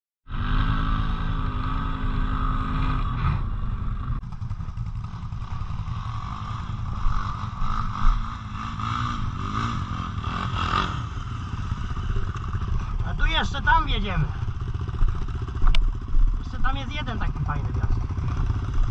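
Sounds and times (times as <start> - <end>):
quad bike engine revving: 0.3 - 18.9.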